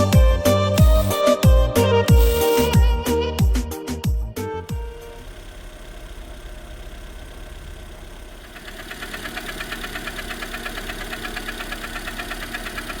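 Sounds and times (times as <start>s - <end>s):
car engine idling: 0.0s - 13.0s
fast even engine ticking: 4.1s - 13.0s.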